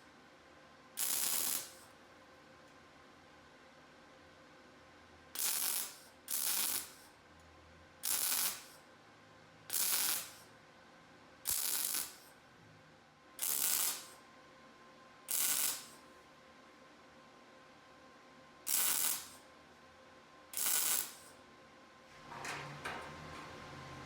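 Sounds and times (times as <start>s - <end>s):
welding arc crackle: 1.0s - 1.9s, 5.4s - 7.1s, 8.0s - 8.8s, 9.7s - 10.5s, 11.5s - 12.3s, 13.4s - 14.2s, 15.3s - 16.0s, 18.7s - 19.4s, 20.6s - 21.4s.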